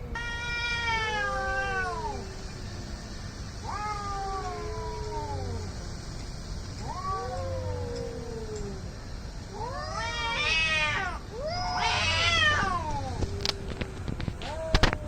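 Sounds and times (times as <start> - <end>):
cats yowling: 0.0 - 2.5, 3.6 - 5.8, 6.8 - 8.9, 9.5 - 15.0.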